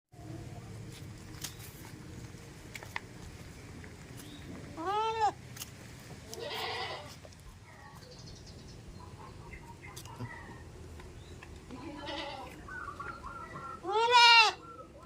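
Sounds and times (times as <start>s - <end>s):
goat bleating: 4.8s - 5.4s, 6.3s - 7.2s, 11.7s - 12.6s, 13.8s - 14.6s.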